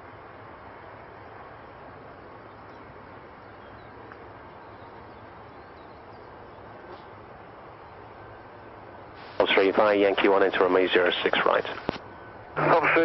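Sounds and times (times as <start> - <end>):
radio static hiss: 9.1 - 13.0.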